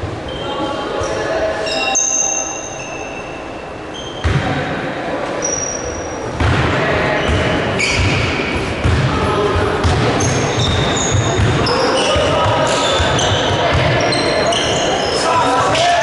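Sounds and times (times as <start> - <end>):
voices of players and spectators: 0.0 - 16.0
short high squeaks: 0.3 - 4.2, 5.4 - 6.2, 10.2 - 15.5
basketball bouncing: 6.4 - 14.2.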